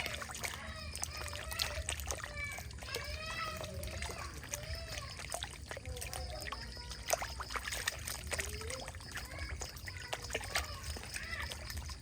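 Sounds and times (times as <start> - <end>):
water splashing and trickling: 0.0 - 12.0.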